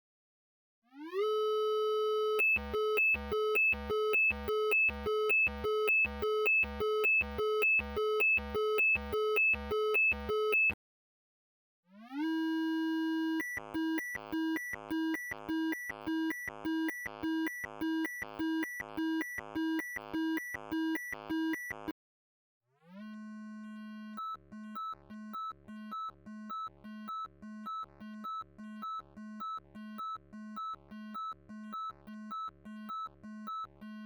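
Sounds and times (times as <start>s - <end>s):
electronic alarm tone: 1.2s - 10.8s.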